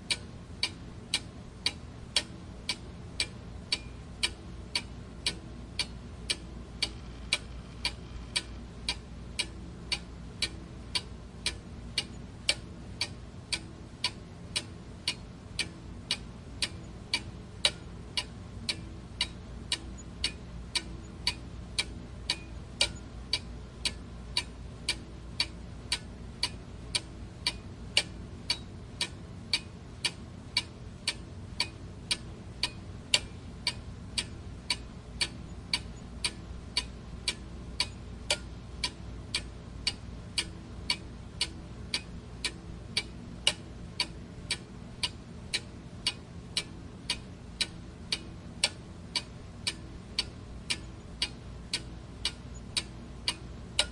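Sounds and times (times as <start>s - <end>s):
faint low hum: 0.0s - 53.9s
clock ticking: 0.1s - 53.9s.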